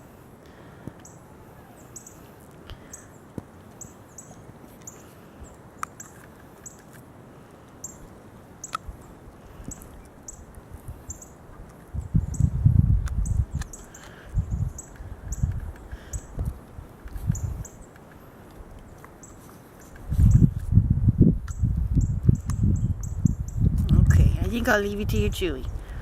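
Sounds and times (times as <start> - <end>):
bird chirping: 1.0 - 6.8, 9.6 - 11.4, 13.2 - 16.4, 17.2 - 18.0
puppy gnawing a chew: 3.4 - 12.1
teeth clicking on hide: 12.9 - 20.1.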